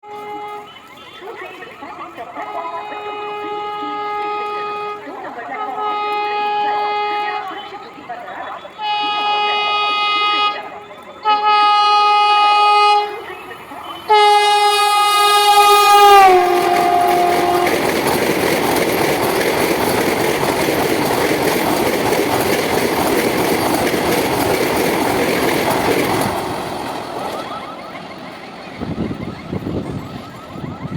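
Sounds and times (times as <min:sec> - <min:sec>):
train horn blast: 0:00.0 - 0:00.9, 0:02.5 - 0:07.9, 0:08.8 - 0:13.3, 0:13.9 - 0:18.2
train rushing and wheel noise: 0:00.0 - 0:30.9.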